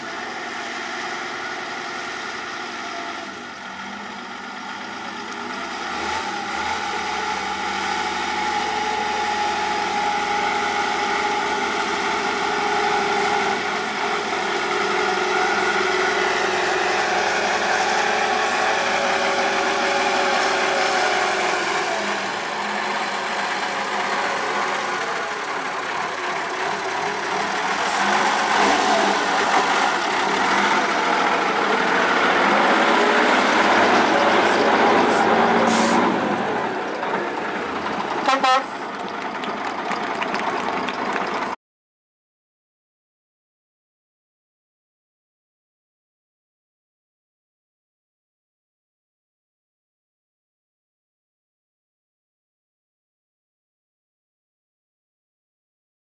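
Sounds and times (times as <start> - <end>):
diesel truck engine running: 0.0 - 41.6.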